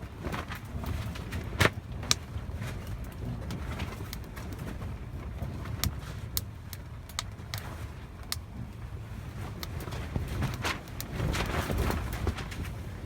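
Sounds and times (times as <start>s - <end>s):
firewood crackling and popping: 0.0s - 13.0s
low fire rumble: 0.0s - 13.0s.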